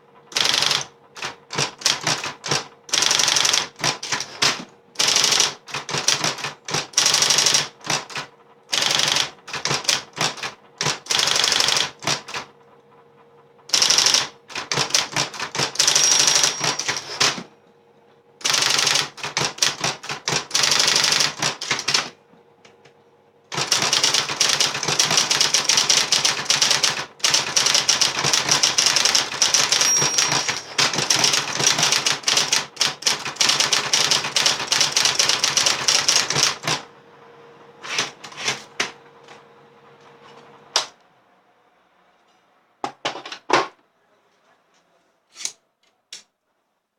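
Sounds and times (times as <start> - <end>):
electric typewriter typing: 0.3 - 12.5, 13.7 - 17.5, 18.4 - 22.2, 23.5 - 36.9, 37.8 - 39.0
typewriter motor humming: 0.3 - 12.5, 13.7 - 17.5, 18.4 - 22.2, 23.5 - 36.9, 37.8 - 39.4.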